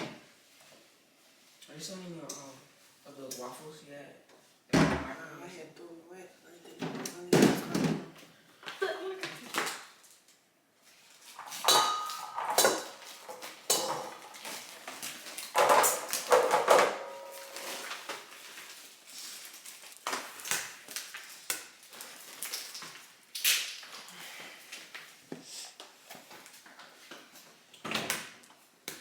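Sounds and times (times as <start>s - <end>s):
dishes and utensils clinking: 11.4s - 18.2s.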